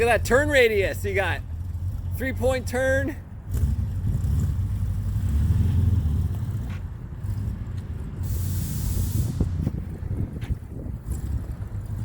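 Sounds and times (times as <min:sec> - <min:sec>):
engine rumbling roughly: 0:00.0 - 0:12.0
short hiss: 0:08.3 - 0:09.6.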